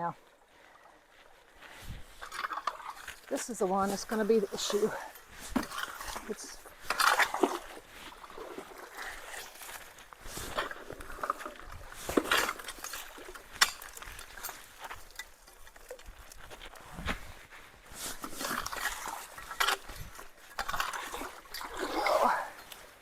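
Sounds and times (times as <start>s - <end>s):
creek water trickling: 0.0s - 16.8s, 17.8s - 23.0s
debris knocking and scraping: 5.4s - 7.8s.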